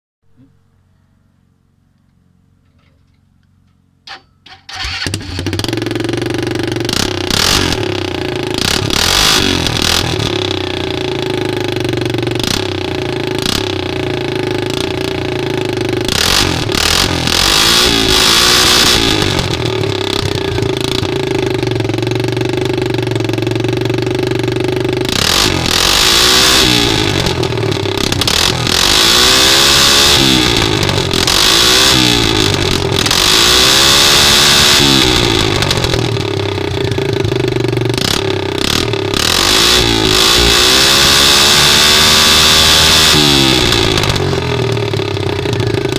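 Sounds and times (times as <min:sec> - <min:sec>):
engine starting and revving: 0:04.1 - 0:10.7, 0:16.0 - 0:21.1, 0:25.1 - 0:36.7, 0:37.9 - 0:45.9.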